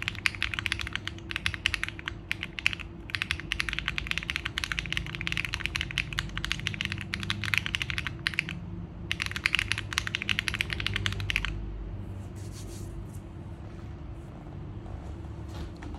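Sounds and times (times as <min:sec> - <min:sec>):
mechanical keyboard typing: 0:00.0 - 0:11.6.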